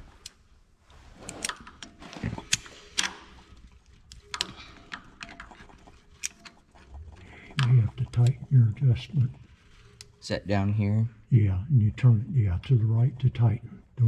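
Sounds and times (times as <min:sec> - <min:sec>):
metallic clicks and knocks of tools: 0:01.3 - 0:03.3, 0:04.1 - 0:05.6.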